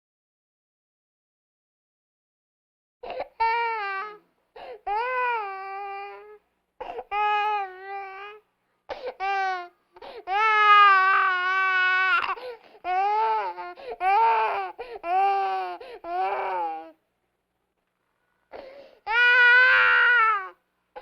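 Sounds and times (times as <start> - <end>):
infant crying: 3.0 - 17.0, 18.5 - 21.0.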